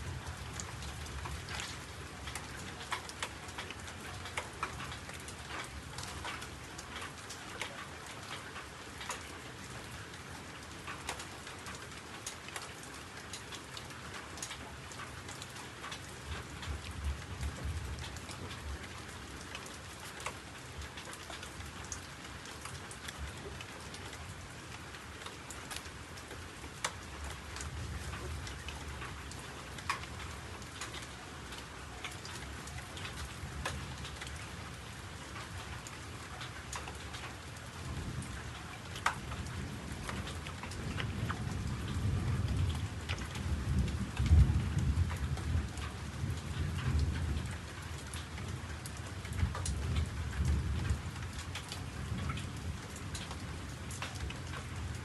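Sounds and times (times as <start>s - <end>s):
rain patter: 0.0s - 55.0s
drip ticks: 0.6s - 9.8s, 13.3s - 23.3s, 25.2s - 34.4s, 38.2s - 52.5s.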